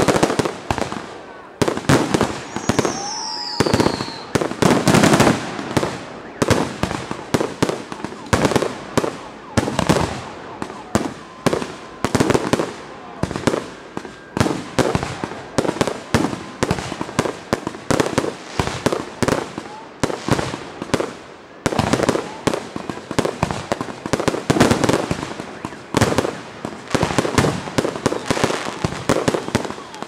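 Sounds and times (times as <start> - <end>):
fireworks banging: 0.0 - 30.0
firework falling whistle: 2.2 - 17.2, 24.4 - 30.0.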